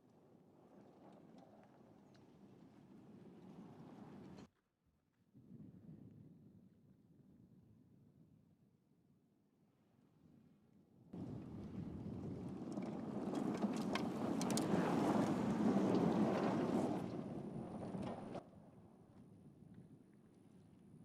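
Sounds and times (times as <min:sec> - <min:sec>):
tyre and wind noise on dirt: 0:11.2 - 0:18.5.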